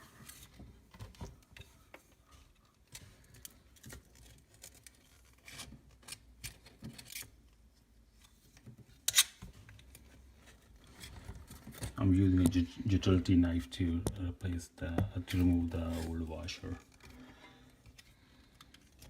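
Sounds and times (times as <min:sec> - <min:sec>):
knife scraping: 0:09.1 - 0:09.4.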